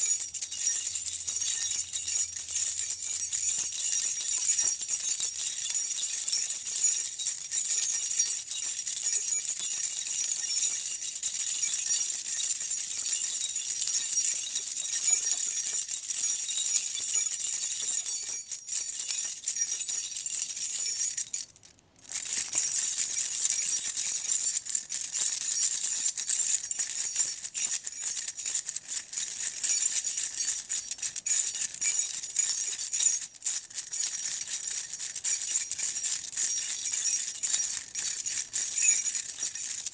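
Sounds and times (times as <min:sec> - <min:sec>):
metal keys jangling: 0:00.0 - 0:39.9.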